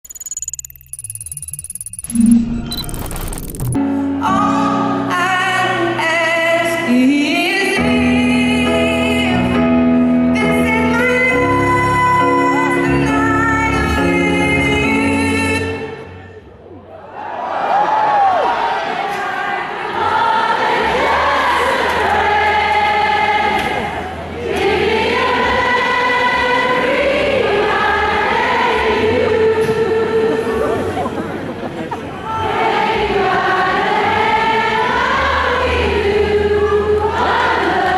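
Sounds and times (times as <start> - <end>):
crowd singing: 18.6 - 37.9.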